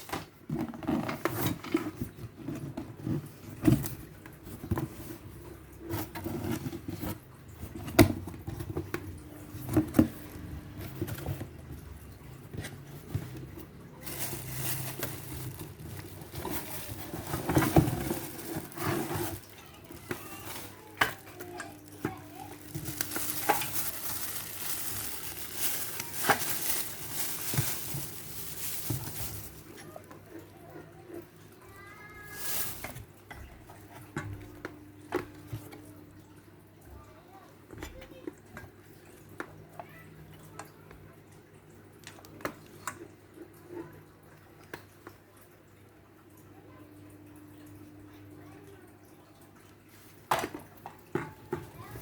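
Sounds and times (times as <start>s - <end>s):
packaging crinkling and rustling: 12.6s - 30.2s, 32.2s - 33.5s.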